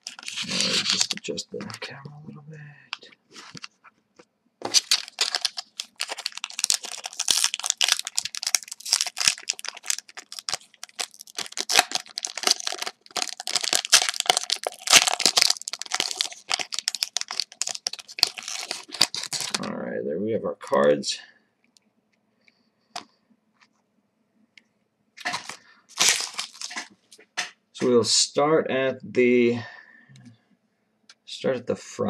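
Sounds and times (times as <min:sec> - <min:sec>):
plastic wrapper crinkling and tearing: 0:00.0 - 0:01.9, 0:02.9 - 0:03.8, 0:04.6 - 0:19.7, 0:25.2 - 0:26.9.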